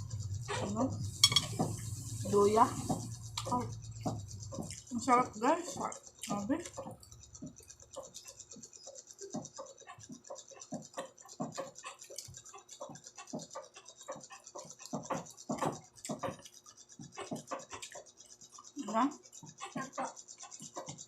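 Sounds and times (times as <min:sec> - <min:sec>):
wet chewing and mouth smacks: 0:04.5 - 0:04.9, 0:15.7 - 0:18.8.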